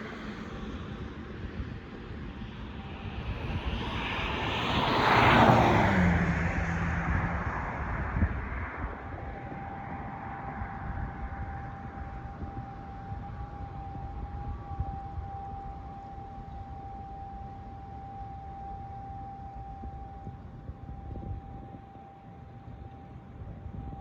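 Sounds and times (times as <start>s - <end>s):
vehicle passing by: 3.8s - 9.2s.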